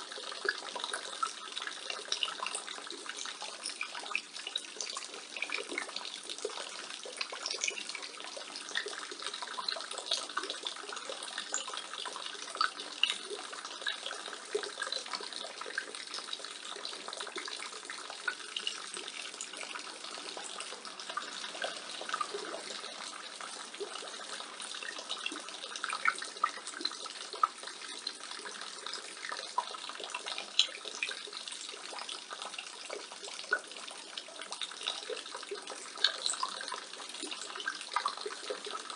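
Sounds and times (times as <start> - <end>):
rainwater splashing from gutter: 0.0 - 38.9
water drips and splats: 0.0 - 38.9.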